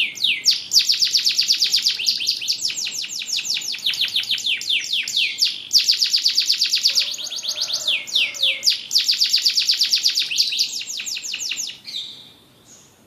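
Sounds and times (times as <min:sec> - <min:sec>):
canary singing trills: 0:00.0 - 0:13.0.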